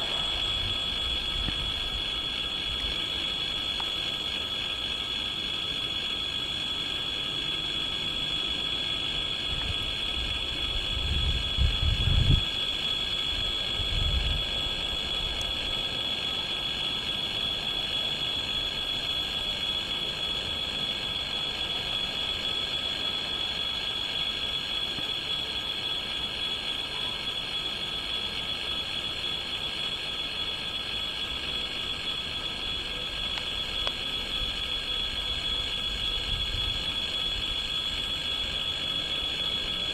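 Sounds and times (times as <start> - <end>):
low rumble: 0.0 - 2.0
train rolling noise: 0.0 - 3.9
high-pitched whine: 0.0 - 39.9.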